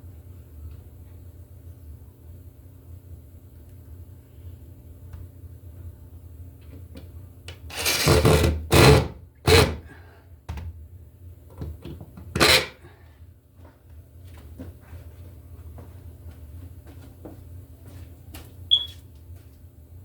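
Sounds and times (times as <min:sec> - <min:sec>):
scraping rubs on cable: 0:12.4 - 0:12.8.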